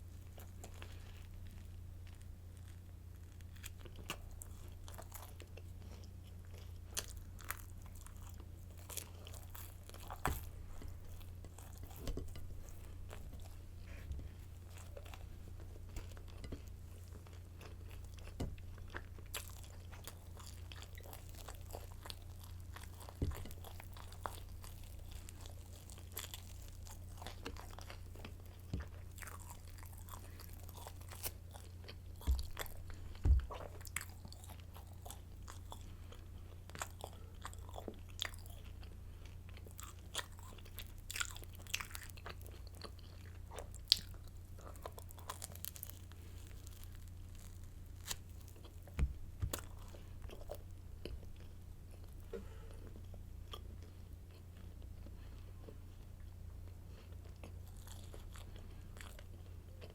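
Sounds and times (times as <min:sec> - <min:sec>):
crunchy bread being chewed: 0:00.0 - 0:59.9
steady low hum: 0:00.0 - 0:59.9.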